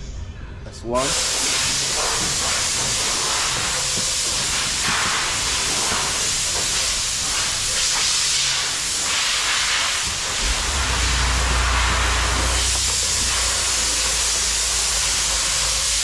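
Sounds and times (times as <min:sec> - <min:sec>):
steady loud hiss: 0:00.7 - 0:16.0
low hum: 0:10.1 - 0:15.8.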